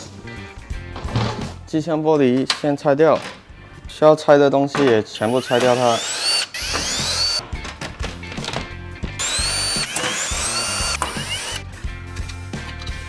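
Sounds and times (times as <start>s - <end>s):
electric screwdriver whirring: 5.1s - 7.4s, 9.2s - 11.6s.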